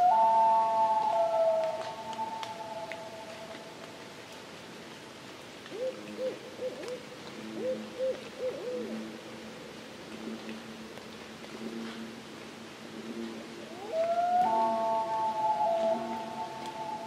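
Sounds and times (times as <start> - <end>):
owl hooting: 0.0 - 3.3, 7.6 - 9.0, 13.7 - 17.0
faint background hiss: 0.0 - 17.0.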